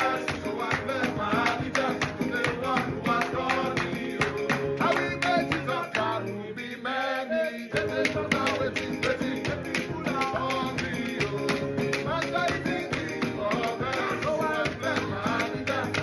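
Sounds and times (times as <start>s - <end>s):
guitar plucked and strummed: 7.7s - 16.0s.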